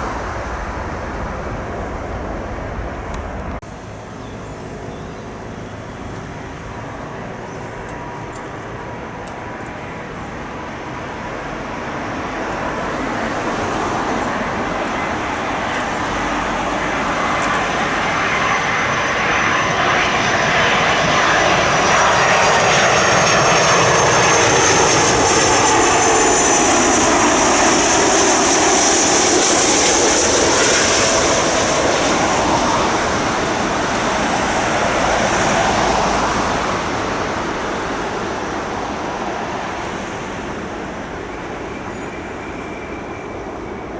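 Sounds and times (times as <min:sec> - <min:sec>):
high fan whine: 0:00.0 - 0:13.1
jet airliner passing low: 0:00.0 - 0:43.9.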